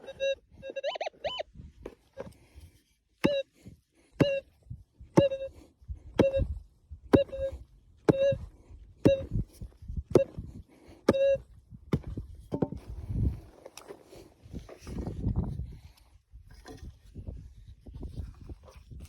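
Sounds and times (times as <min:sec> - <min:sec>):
metal detector beeping: 0:00.0 - 0:01.5, 0:03.2 - 0:03.6, 0:04.2 - 0:04.6, 0:05.2 - 0:09.5, 0:10.1 - 0:10.4, 0:11.1 - 0:11.6.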